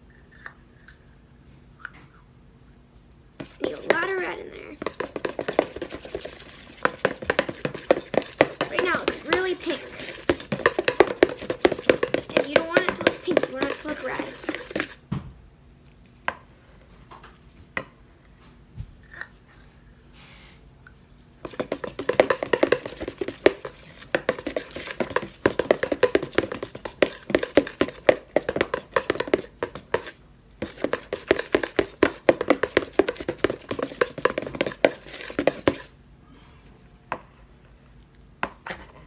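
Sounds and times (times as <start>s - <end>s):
utensil scraping mixing bowl: 3.4s - 15.0s, 21.4s - 35.9s.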